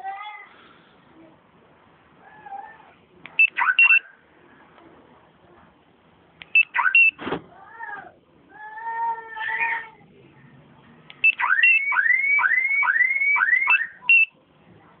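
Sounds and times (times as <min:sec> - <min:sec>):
short high beeps: 0:03.4 - 0:04.0
car alarm siren whooping: 0:11.4 - 0:14.0.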